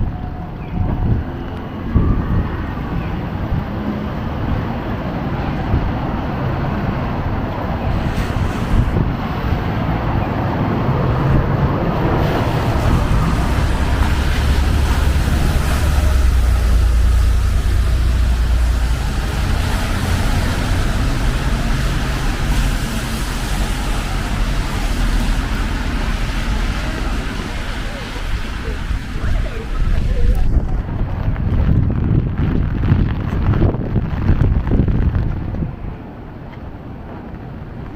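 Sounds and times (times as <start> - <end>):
heavy vehicle passing rumble: 0.0 - 37.9
wet road noise: 0.0 - 37.9
rain hiss: 4.2 - 10.2, 10.8 - 31.5.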